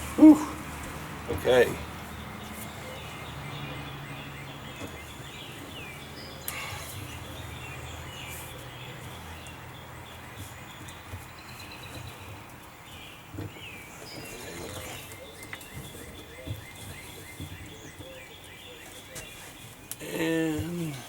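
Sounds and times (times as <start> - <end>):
small birds chirping: 0.0 - 21.0.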